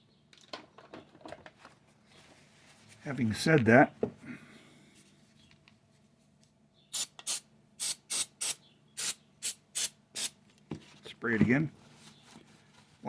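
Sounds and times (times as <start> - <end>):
aerosol spray can hissing: 7.0 - 10.4.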